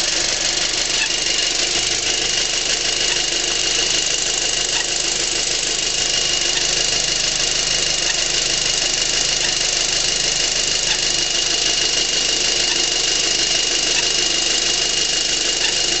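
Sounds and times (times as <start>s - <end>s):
car engine running: 0.0s - 16.0s
engine chirp: 0.0s - 16.0s
engine high whine: 0.0s - 16.0s.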